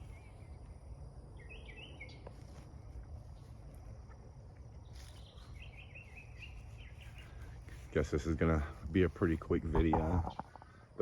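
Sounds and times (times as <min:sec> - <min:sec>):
birds chirping: 0:04.8 - 0:08.1, 0:09.8 - 0:10.8.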